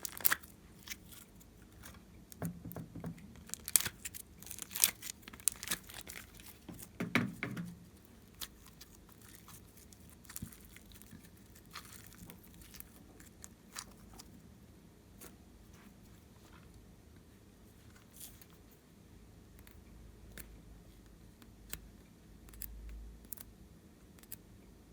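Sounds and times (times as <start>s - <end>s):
slime crackling and popping: 0.0s - 1.9s, 3.4s - 7.0s, 7.9s - 14.3s.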